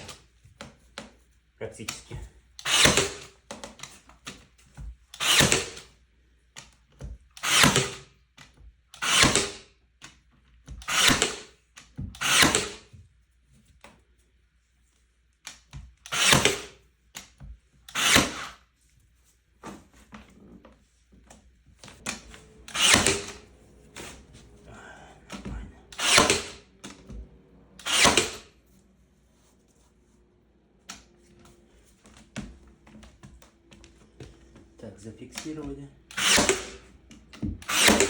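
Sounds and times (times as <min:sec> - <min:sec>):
nail gun firing: 0:02.6 - 0:03.3, 0:05.2 - 0:05.9, 0:07.4 - 0:08.1, 0:09.0 - 0:09.6, 0:10.8 - 0:11.5, 0:12.2 - 0:12.8, 0:16.1 - 0:16.7, 0:17.9 - 0:18.6, 0:22.1 - 0:23.4, 0:25.9 - 0:27.0, 0:27.8 - 0:28.5, 0:36.1 - 0:36.9, 0:37.6 - 0:38.0.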